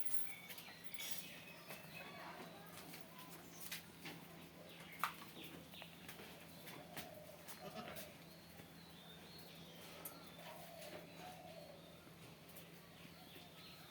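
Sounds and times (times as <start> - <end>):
goat kid bleating faintly: 7.5 - 8.2.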